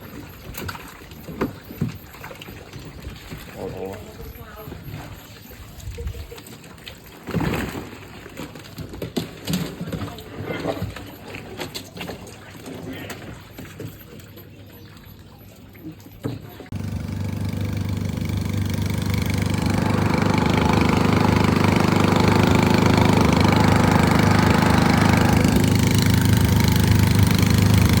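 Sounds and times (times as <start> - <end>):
water noise: 11.1 - 28.0
boat engine running: 16.7 - 28.0.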